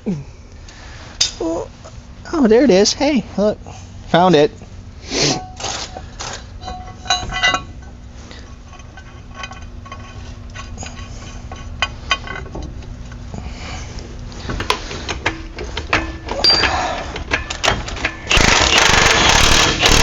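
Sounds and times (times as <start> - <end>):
steady low hum: 0.0 - 20.0
metal tools clinking: 5.3 - 8.0, 8.7 - 12.7, 15.2 - 18.8.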